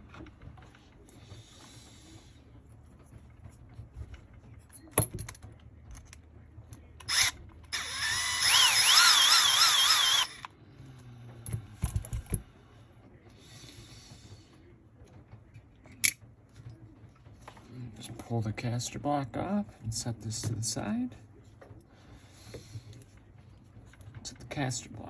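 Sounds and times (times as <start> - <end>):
electric screwdriver whining: 7.0 - 10.5.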